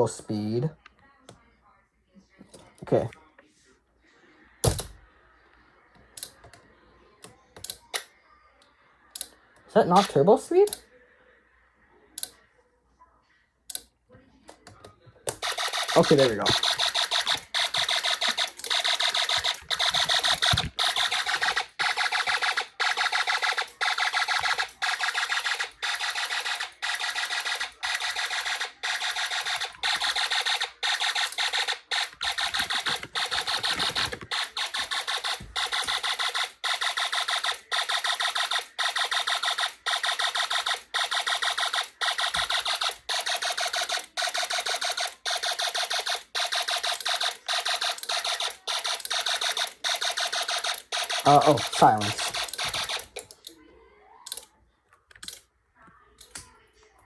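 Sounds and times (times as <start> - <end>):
pulsing high-pitched alarm tone: 15.4 - 53.0.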